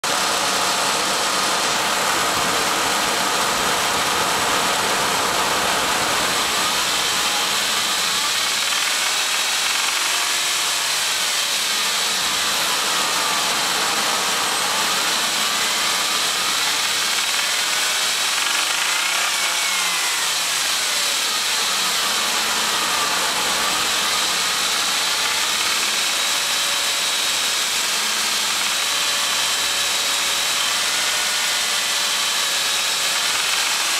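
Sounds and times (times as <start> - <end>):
engine knocking: 0.1 - 11.1, 13.6 - 19.4, 24.2 - 26.5, 33.1 - 33.9.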